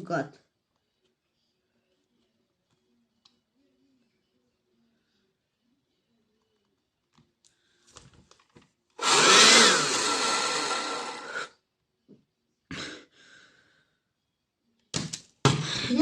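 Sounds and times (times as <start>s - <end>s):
vacuum motor whining: 9.0s - 11.5s.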